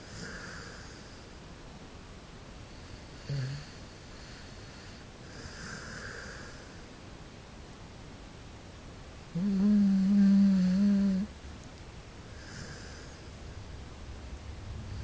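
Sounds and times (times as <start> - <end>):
dog snoring: 0.0 - 1.0, 3.2 - 6.8, 9.3 - 11.3, 12.3 - 13.2.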